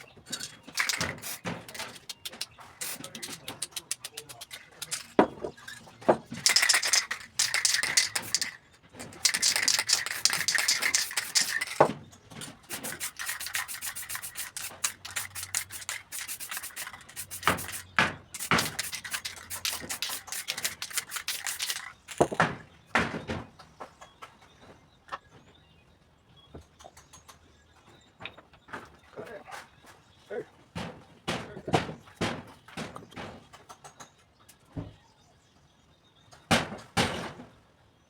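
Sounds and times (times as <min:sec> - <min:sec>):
rubbing strokes against a surface: 0:00.7 - 0:05.2, 0:06.4 - 0:11.9, 0:12.6 - 0:22.2.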